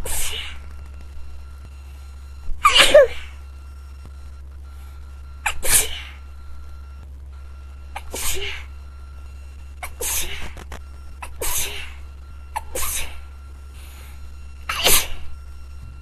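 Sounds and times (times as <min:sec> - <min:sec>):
person sneezing: 0:02.6 - 0:03.3, 0:05.4 - 0:06.1, 0:08.0 - 0:08.6, 0:09.8 - 0:10.6, 0:11.2 - 0:12.0, 0:12.6 - 0:13.2, 0:14.7 - 0:15.2.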